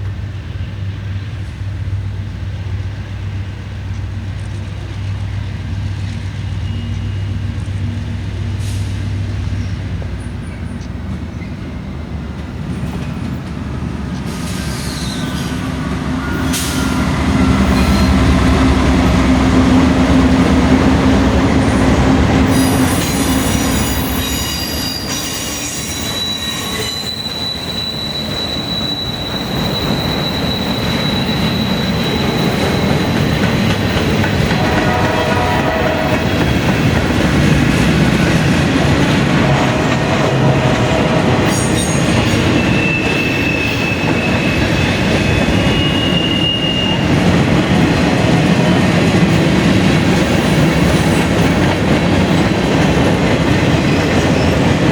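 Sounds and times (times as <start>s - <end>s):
train wheels rumbling on rails: 0.0s - 54.9s
steel wheels squealing: 5.4s - 7.8s, 14.2s - 18.5s, 22.5s - 36.9s, 37.9s - 48.8s, 53.8s - 54.9s.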